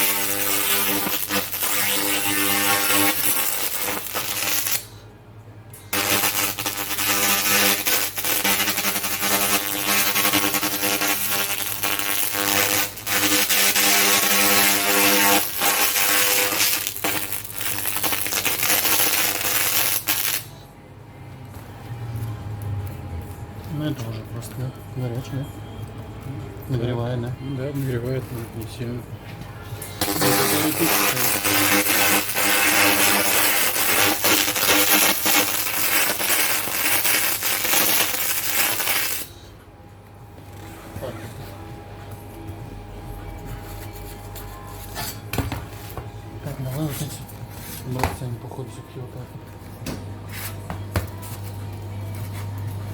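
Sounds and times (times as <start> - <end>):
buzzing tone: 0.0 - 4.9, 5.9 - 20.5, 30.0 - 39.3
laser crackling hiss on metal: 0.0 - 5.0, 5.9 - 20.5, 30.0 - 39.3.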